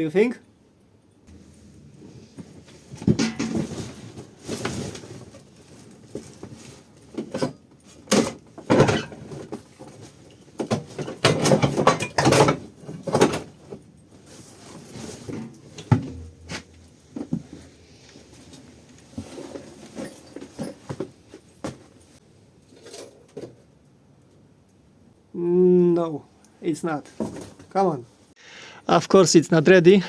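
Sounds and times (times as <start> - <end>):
scraping and rustling: 1.3 - 11.6, 13.0 - 23.2
objects knocking and clunking: 1.3 - 14.0, 14.6 - 22.0.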